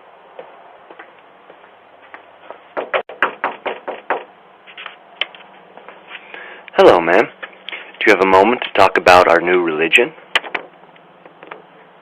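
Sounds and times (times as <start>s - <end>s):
steady microphone hiss: 0.0s - 12.0s
sharp knocks: 2.7s - 4.4s.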